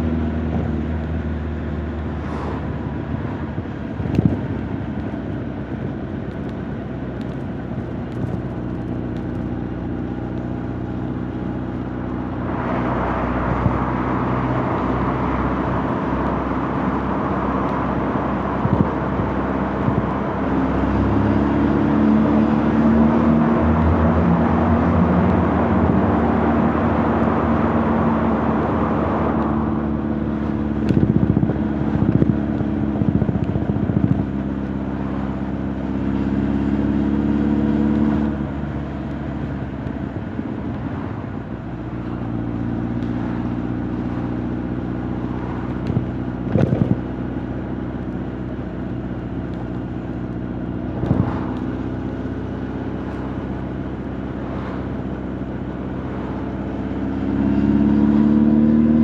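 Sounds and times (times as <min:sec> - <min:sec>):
motorcycle engine running: 0:38.4 - 0:57.4.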